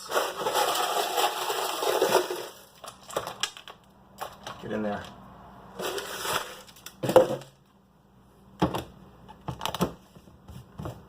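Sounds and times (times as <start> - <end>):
ice cubes clinking in blender cup: 0.0 - 3.2.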